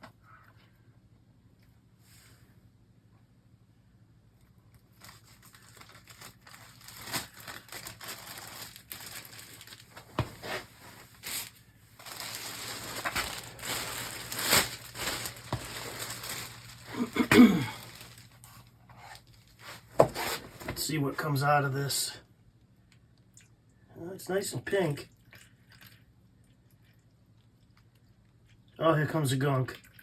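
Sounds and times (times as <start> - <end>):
rustling and crinkling: 4.4 - 20.9.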